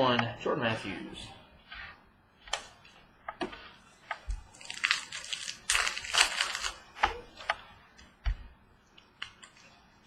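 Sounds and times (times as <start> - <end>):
wrapper crinkling and tearing: 4.5 - 6.9.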